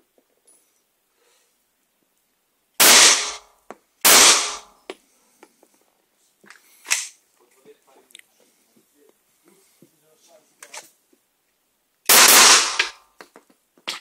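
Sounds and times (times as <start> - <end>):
gunshots with echo: 2.8 - 3.5, 4.1 - 4.7, 12.1 - 13.0.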